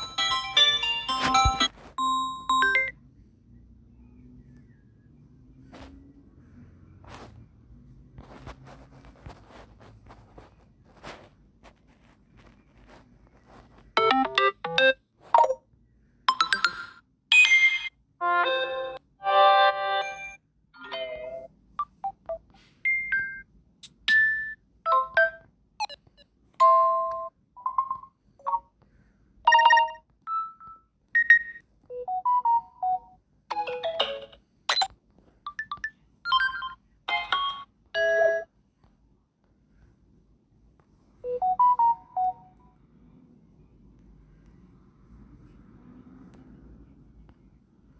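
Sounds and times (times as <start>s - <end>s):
phone ringtone melodies: 0.0s - 3.0s, 14.0s - 15.6s, 16.3s - 20.4s, 29.5s - 34.9s, 35.5s - 38.5s, 41.3s - 42.6s.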